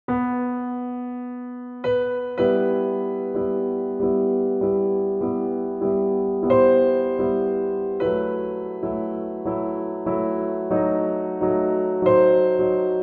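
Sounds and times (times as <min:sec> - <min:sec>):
slow piano melody: 0:00.1 - 0:13.0.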